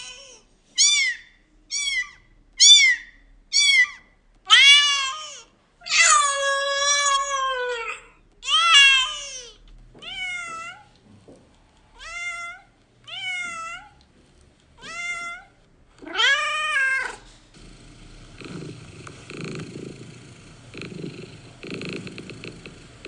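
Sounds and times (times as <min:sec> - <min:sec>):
cat meowing: 0:00.0 - 0:10.9, 0:12.0 - 0:14.0, 0:14.8 - 0:17.2
cat purring: 0:17.0 - 0:23.0.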